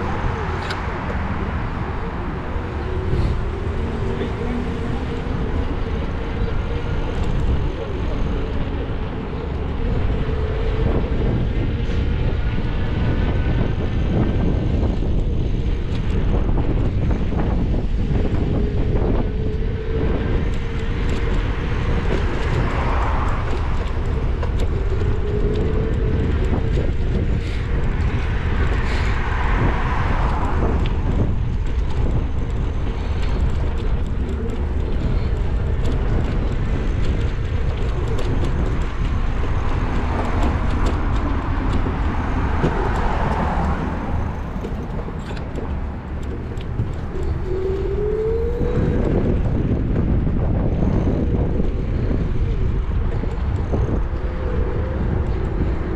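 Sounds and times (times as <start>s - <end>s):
car road and engine rumble: 0.0s - 55.9s
other traffic passing: 0.0s - 55.9s.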